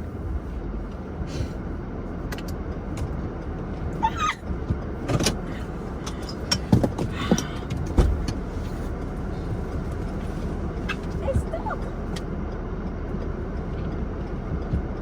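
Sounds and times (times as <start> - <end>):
car engine rumbling: 0.0 - 15.0
short knocks and thumps: 4.6 - 8.8.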